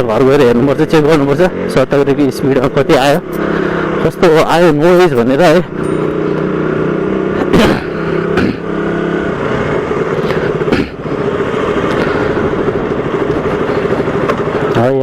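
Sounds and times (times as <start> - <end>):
motorcycle engine running: 0.0 - 15.0
rushing air and road noise: 0.0 - 15.0.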